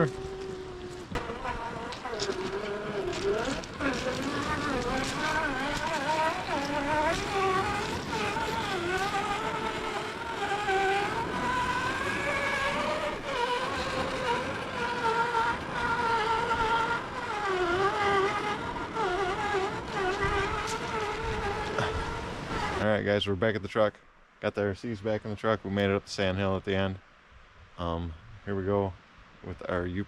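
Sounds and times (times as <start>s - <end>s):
electric motor whining: 0.0s - 22.8s.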